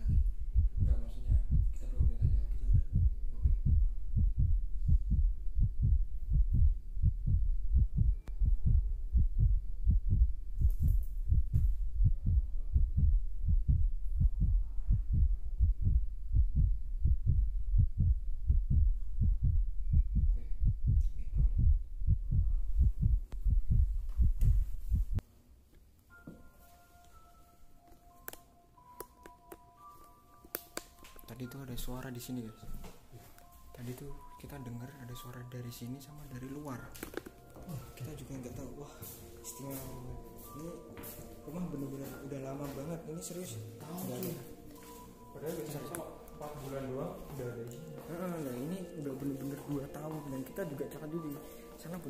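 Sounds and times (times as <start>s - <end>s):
heartbeat thumping: 0.0s - 25.2s.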